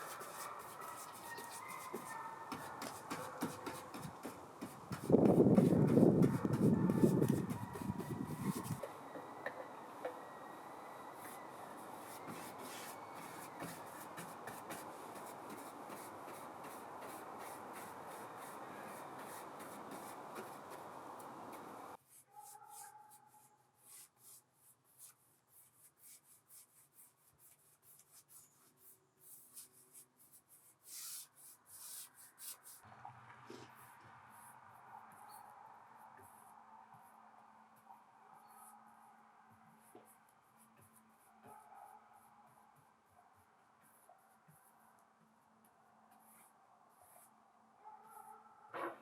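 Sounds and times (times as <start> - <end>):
rubbing and handling noise: 0.0 - 9.3, 11.2 - 32.8.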